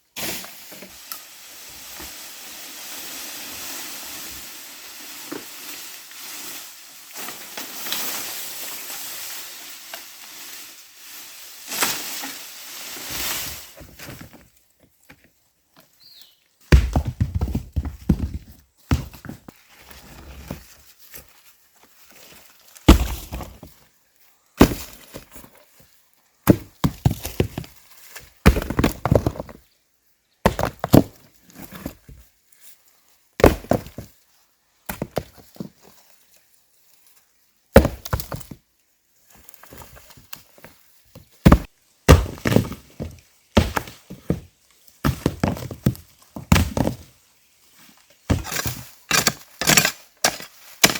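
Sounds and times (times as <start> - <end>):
axe chopping wood: 16.7 - 17.6, 22.9 - 23.6, 24.6 - 25.1, 33.4 - 34.0, 37.8 - 38.5, 41.4 - 42.8, 43.6 - 44.0, 48.3 - 50.9.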